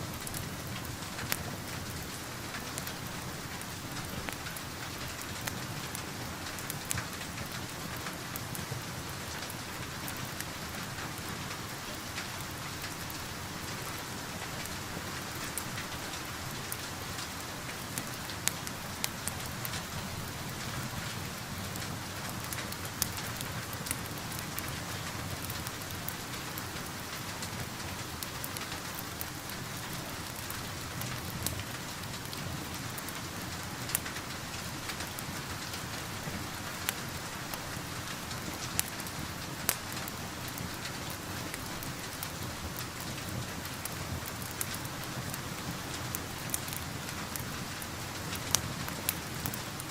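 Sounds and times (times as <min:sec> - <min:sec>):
steady rain heard indoors: 0:00.0 - 0:49.9.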